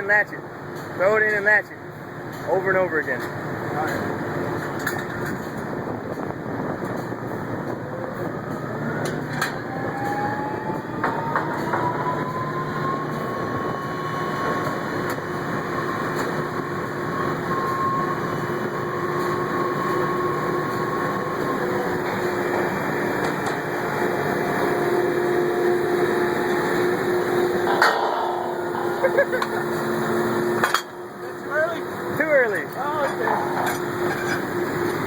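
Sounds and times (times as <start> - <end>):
drilling rig machinery whine: 0.0 - 35.0
metal clanks: 27.6 - 29.5.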